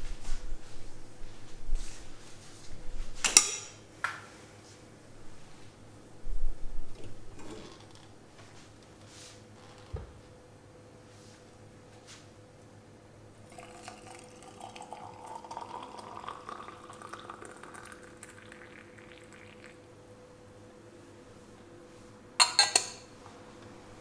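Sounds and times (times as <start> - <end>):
liquid pouring into container: 13.4 - 19.8.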